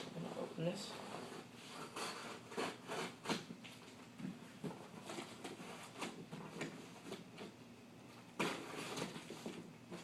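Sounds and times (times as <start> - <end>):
cardboard scraping and rustling: 4.3 - 7.5, 8.3 - 10.0.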